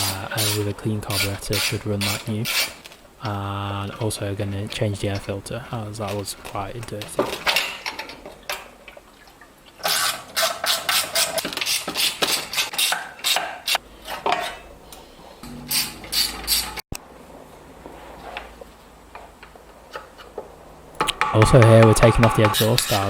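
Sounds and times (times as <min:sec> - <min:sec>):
scraping and clicking on engine parts: 0:00.0 - 0:09.1.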